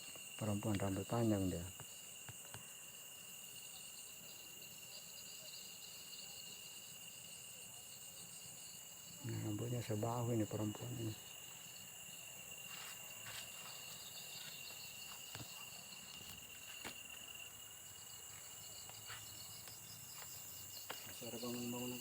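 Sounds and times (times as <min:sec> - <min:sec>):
crickets and insects trilling: 0:00.0 - 0:22.0.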